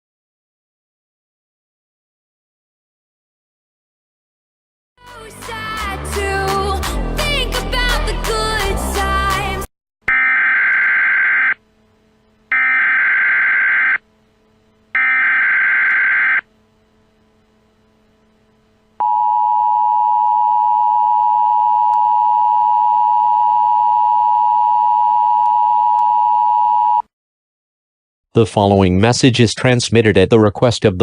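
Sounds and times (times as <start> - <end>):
buzzy data bursts: 12.5 - 14.0, 14.9 - 16.4.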